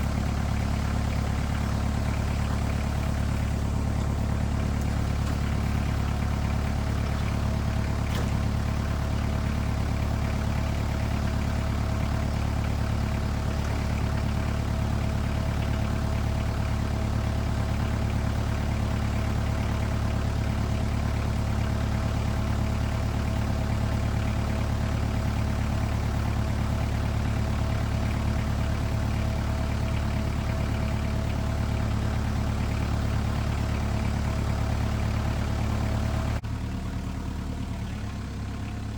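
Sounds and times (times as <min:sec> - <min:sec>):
tractor engine running: 0:00.0 - 0:38.9.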